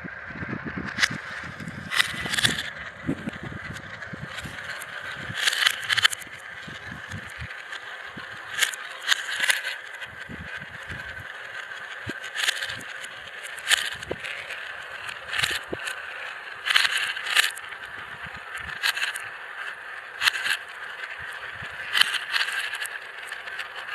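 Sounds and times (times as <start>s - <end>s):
marbles rolling: 0.8s - 23.9s
marbles clattering drops: 1.8s - 3.4s, 4.3s - 7.9s, 8.5s - 10.0s, 10.6s - 16.0s, 16.6s - 17.7s, 18.6s - 19.2s, 21.9s - 23.6s.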